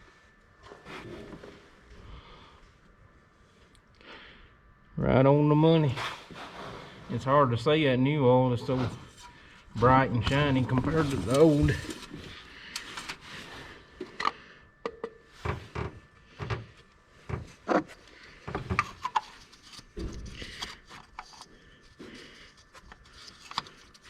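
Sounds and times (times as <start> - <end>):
rubbing of tools and parts: 8.6 - 13.3
tools knocking and clinking: 14.8 - 15.9.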